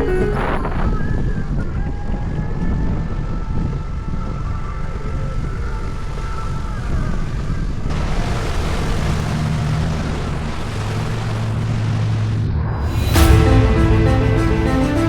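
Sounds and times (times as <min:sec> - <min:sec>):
wind on microphone: 0:00.0 - 0:08.6
vehicle hum: 0:07.9 - 0:13.2.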